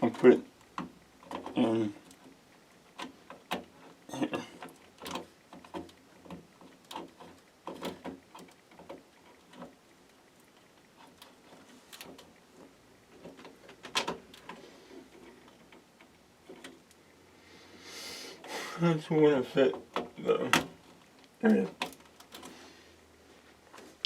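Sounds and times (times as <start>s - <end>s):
cable rustling: 0.0s - 17.0s.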